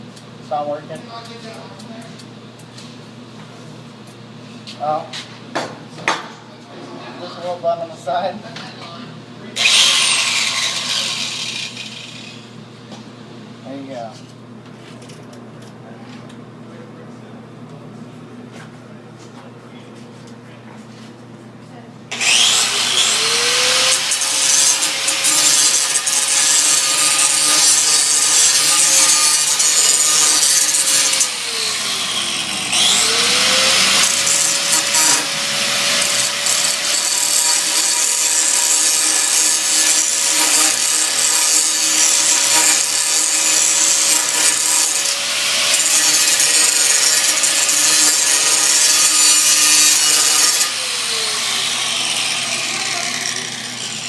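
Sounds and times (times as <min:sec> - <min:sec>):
angle grinder whining and grinding: 0:09.6 - 0:12.5, 0:22.1 - 0:54.0.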